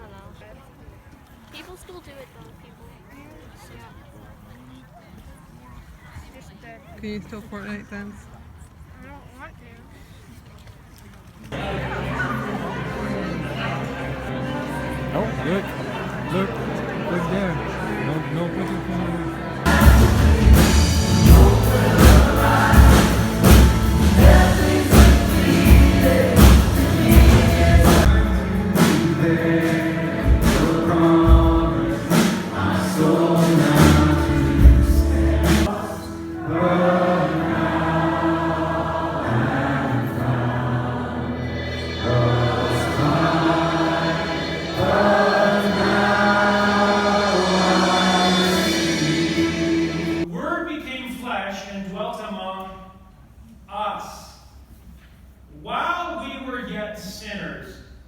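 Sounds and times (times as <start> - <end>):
gospel choir singing: 11.5 - 50.3
steady drum beat: 19.7 - 35.8, 42.0 - 50.3.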